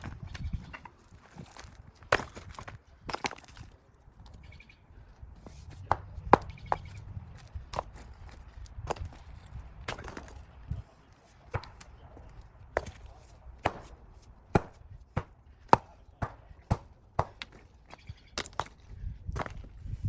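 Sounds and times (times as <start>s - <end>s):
digging tool striking soil and gravel: 1.5s - 3.6s.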